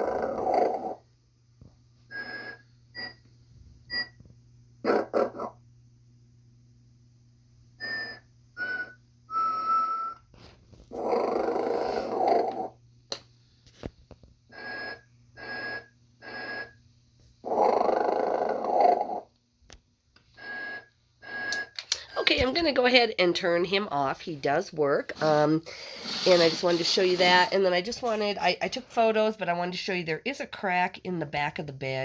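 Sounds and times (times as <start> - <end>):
toy snoring: 0.0 - 1.0, 4.8 - 5.6, 10.9 - 12.8, 14.5 - 16.8, 17.4 - 19.3
toy whistling toots: 7.8 - 10.3.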